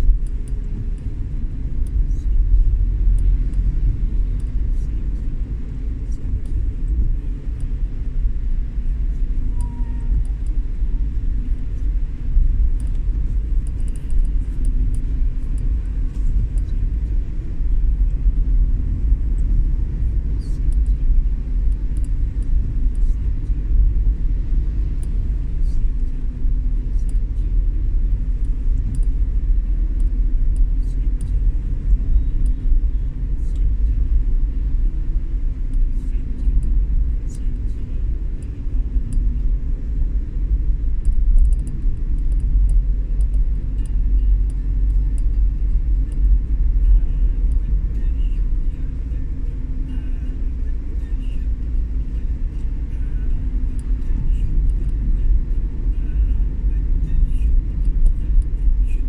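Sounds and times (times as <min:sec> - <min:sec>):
vehicle rumbling on road: 0:00.0 - 0:59.0
faint ticks: 0:11.3 - 0:34.2, 0:35.0 - 0:59.0.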